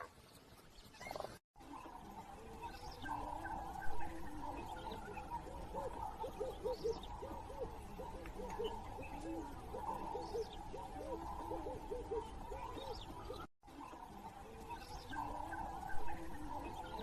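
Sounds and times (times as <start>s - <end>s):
bird hooting: 3.0s - 13.4s.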